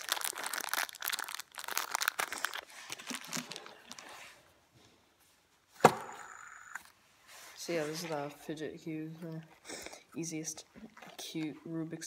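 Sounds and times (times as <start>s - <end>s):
plastic packaging crinkling: 0.0s - 4.3s.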